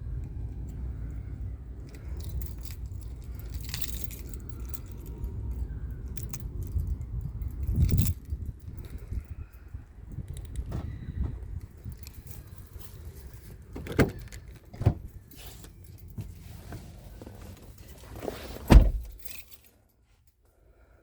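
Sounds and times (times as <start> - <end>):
steady low rumble: 0.0 - 16.2
car keys jangling: 0.6 - 20.4.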